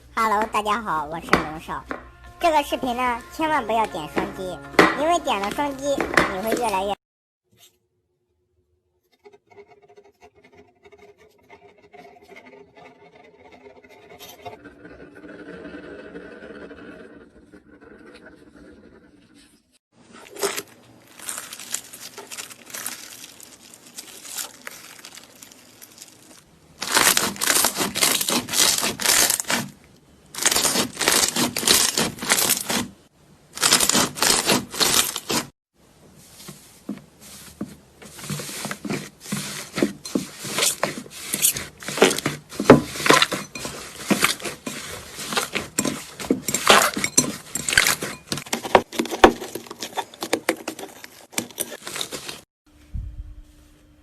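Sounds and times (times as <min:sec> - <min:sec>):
slime crackling and popping: 0:20.4 - 0:29.5.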